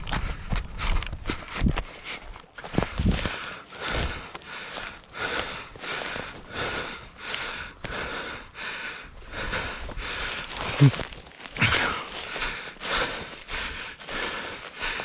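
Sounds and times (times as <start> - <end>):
man breathing hard: 0.0 - 15.0.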